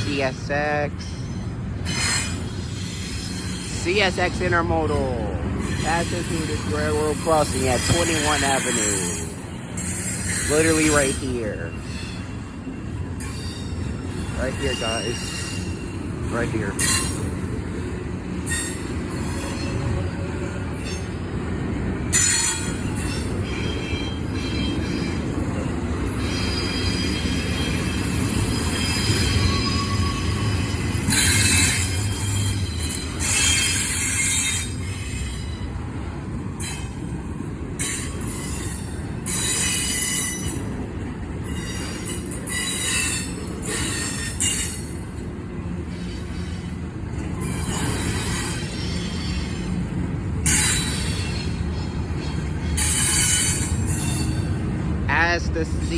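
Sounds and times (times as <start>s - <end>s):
train wheels rumbling on rails: 0.0s - 55.9s
wheel squeal: 22.1s - 35.7s, 41.4s - 45.0s, 45.8s - 49.8s.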